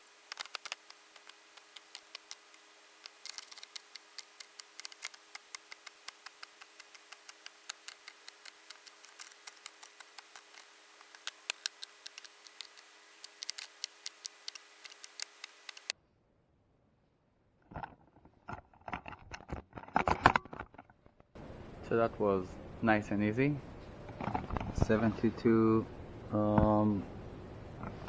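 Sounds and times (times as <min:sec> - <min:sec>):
keyboard and mouse clicking: 0:00.0 - 0:15.9
faint electrical hum: 0:00.0 - 0:17.4, 0:21.4 - 0:28.0.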